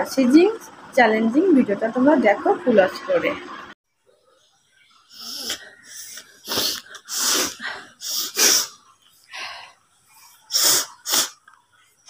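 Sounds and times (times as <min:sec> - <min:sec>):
woman blowing air through nose: 0:05.1 - 0:08.8, 0:10.5 - 0:11.4.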